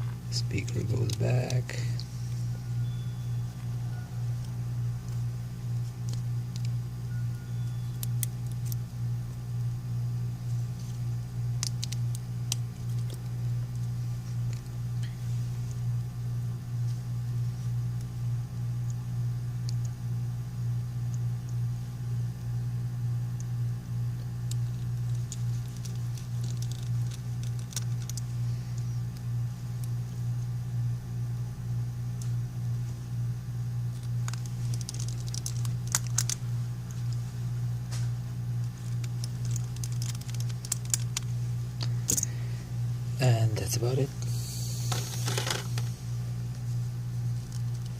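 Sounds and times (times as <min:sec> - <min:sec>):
steady low hum: 0:00.0 - 0:47.9
small tools clicking and tapping: 0:24.5 - 0:28.3.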